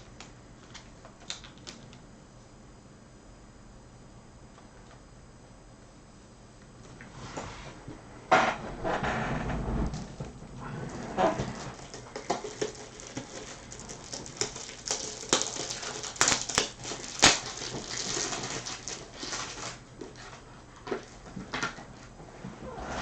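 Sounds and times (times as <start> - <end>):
plastic sleeves rustling: 8.7 - 21.8.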